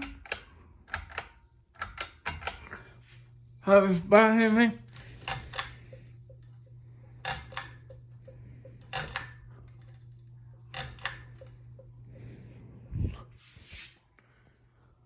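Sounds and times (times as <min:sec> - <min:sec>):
ceiling fan humming: 0:00.0 - 0:15.0.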